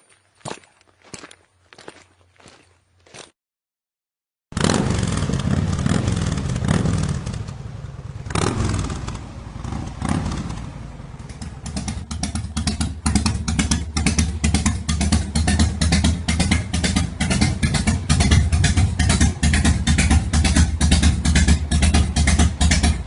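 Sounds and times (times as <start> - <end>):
motorcycle engine revving: 4.5 - 23.0.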